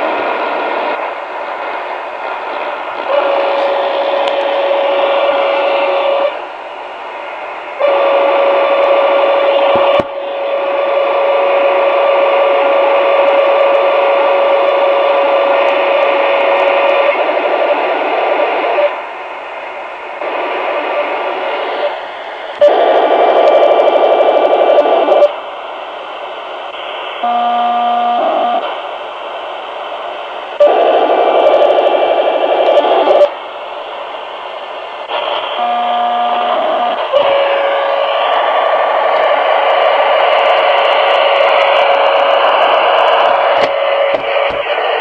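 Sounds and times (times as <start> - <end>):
radio interference buzzing: 0.0 - 6.5, 7.5 - 19.0, 19.6 - 25.4, 26.7 - 33.8, 35.0 - 45.0.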